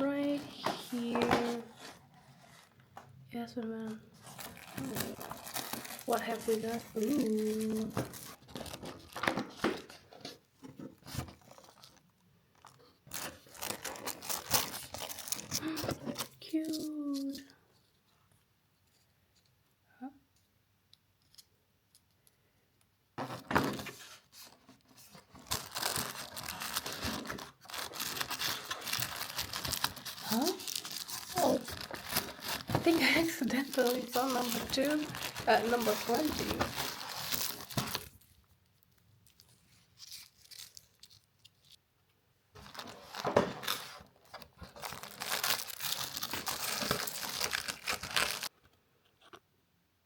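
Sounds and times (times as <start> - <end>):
paper packaging tearing and crinkling: 4.2 - 10.0, 12.6 - 17.4, 23.2 - 38.2, 39.2 - 41.8, 42.6 - 48.5.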